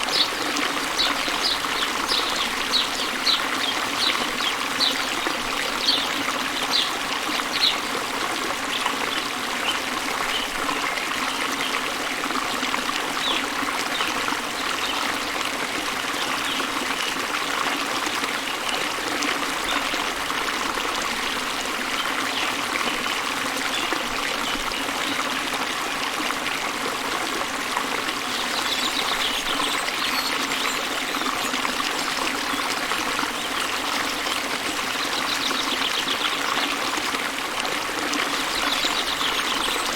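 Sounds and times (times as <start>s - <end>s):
stream running water: 0.0s - 39.9s.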